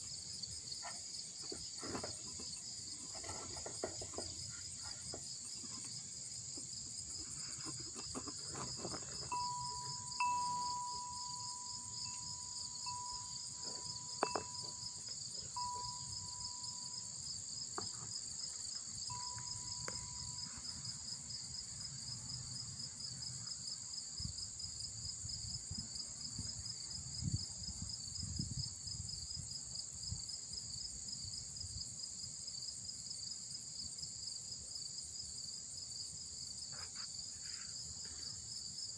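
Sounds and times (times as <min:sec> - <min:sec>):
crickets chirping: 0:00.0 - 0:38.9
thin steady tone: 0:07.6 - 0:18.0, 0:19.0 - 0:21.2
faint knocks: 0:12.9 - 0:16.1.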